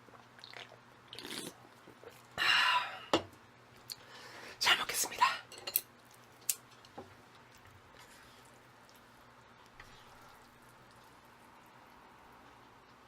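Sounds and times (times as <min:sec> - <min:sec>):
wet chewing of noodles: 0:00.0 - 0:02.4, 0:05.9 - 0:13.0.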